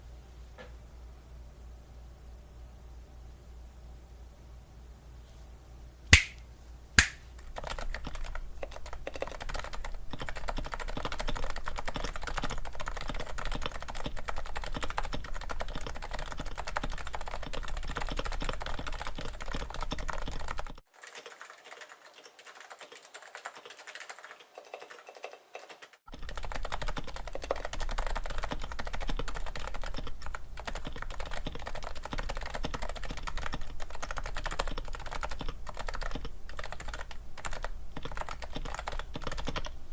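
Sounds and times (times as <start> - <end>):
sharp clicks: 6.2 - 6.4, 7.0 - 8.1
soft keyboard typing: 7.0 - 39.8.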